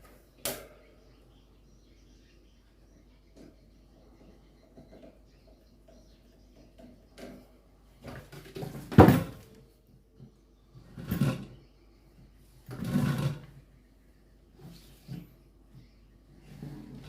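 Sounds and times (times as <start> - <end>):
fan parts knocking and clattering: 4.6 - 9.6.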